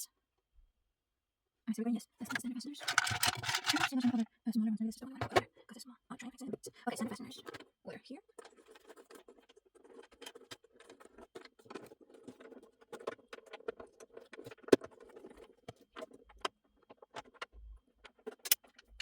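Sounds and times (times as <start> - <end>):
plastic parts and screws rattling: 2.2 - 4.3, 5.2 - 5.4, 8.3 - 19.0.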